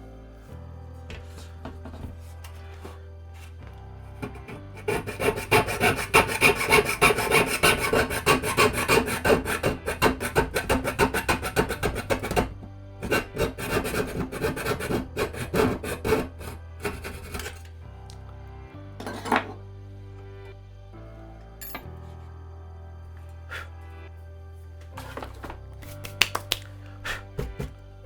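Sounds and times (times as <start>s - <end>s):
saw cutting through brass sheet: 4.2s - 17.6s.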